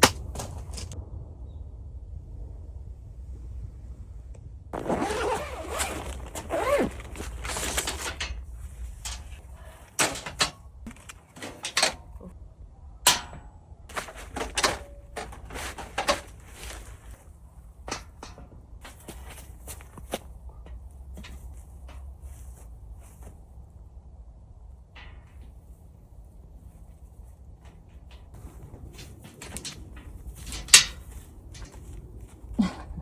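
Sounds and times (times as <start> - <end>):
squeaks: 4.8 - 8.0
rustling and scraping: 4.8 - 12.4, 13.9 - 23.7, 25.0 - 33.0.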